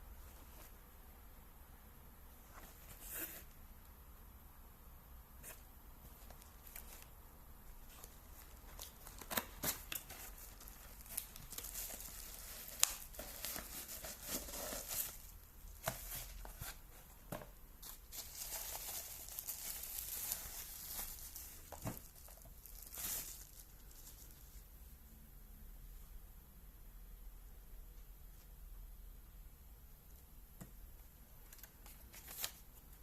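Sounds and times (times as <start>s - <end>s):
packaging crinkling and tearing: 7.9s - 15.4s, 17.8s - 24.3s.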